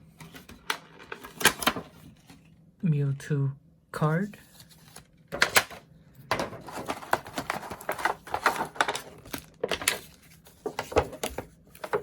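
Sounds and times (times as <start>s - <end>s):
card packaging crinkling: 6.4s - 12.0s.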